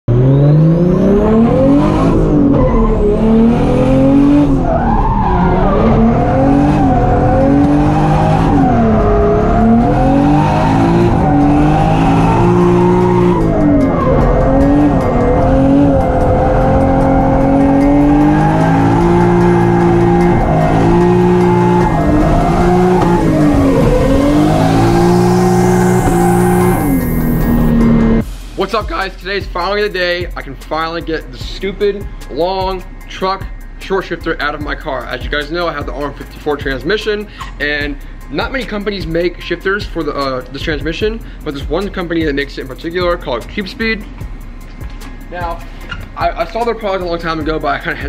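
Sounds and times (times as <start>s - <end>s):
car engine revving: 0.0s - 28.3s
tires squealing: 0.1s - 28.2s.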